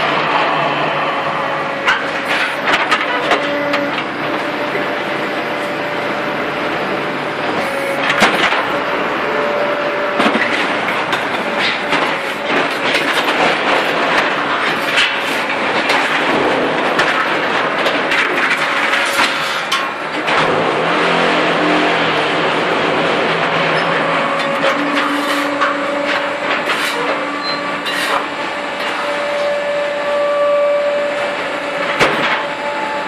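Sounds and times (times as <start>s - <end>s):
metal knocks and clatter: 1.8s - 4.8s, 10.2s - 20.7s.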